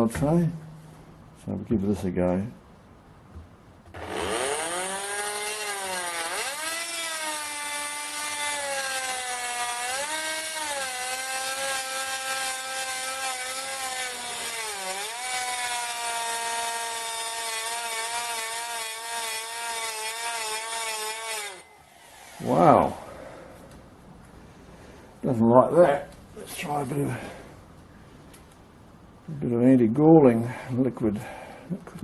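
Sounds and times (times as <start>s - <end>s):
drill whining screech: 3.9s - 23.0s.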